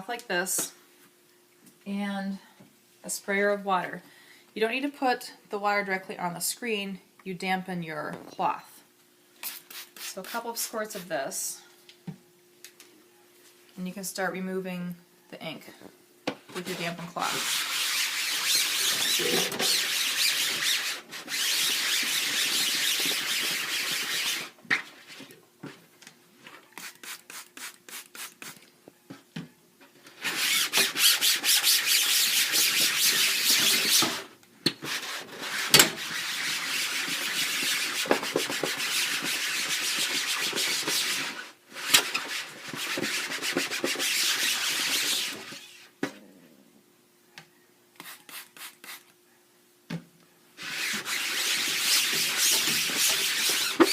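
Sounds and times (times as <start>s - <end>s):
cloth scrubbing a screen: 16.6s - 25.4s, 30.2s - 34.2s, 34.8s - 45.8s, 50.6s - 53.9s.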